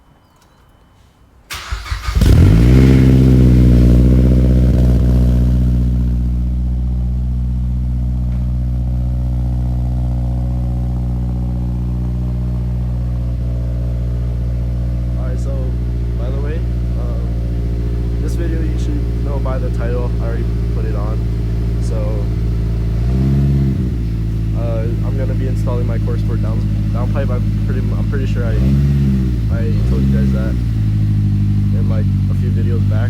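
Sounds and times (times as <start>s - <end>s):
starter cranking: 1.5s - 3.2s
car engine idling: 1.5s - 33.0s.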